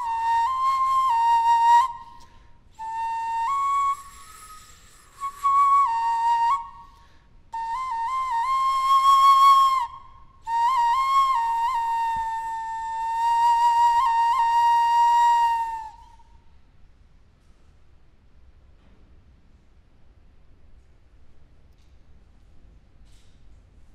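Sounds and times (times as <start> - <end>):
high wind instrument melody: 0.0 - 2.2, 2.8 - 6.8, 7.6 - 16.1.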